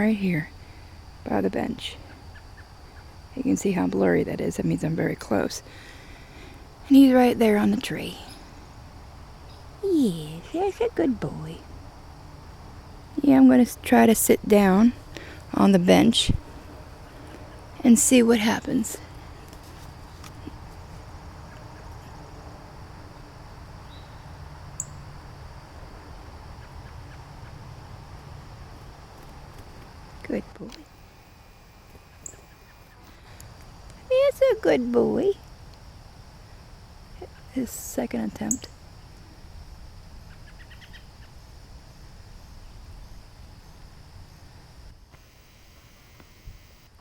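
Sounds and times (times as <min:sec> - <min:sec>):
faint insect chirps: 0:00.0 - 0:47.0
insects droning: 0:00.0 - 0:47.0
low outdoor background noise: 0:00.0 - 0:47.0.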